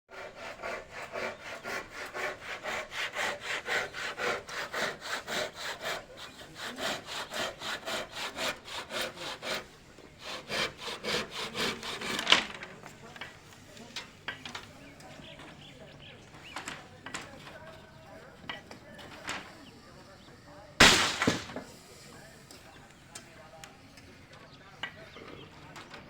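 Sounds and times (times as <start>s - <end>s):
hand saw cutting wood: 0.1s - 13.4s.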